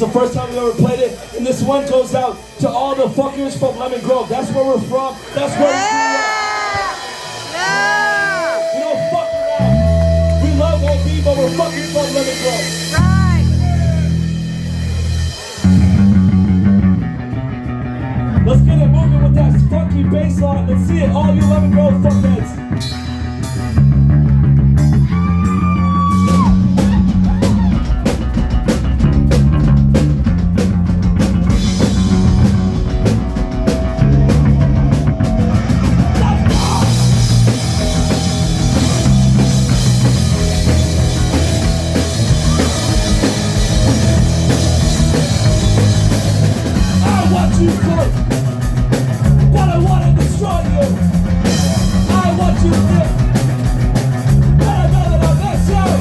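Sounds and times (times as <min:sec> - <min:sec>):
live rock band playing: 0:00.0 - 0:56.0
cymbals: 0:07.0 - 0:15.8
funky bass line: 0:07.6 - 0:56.0.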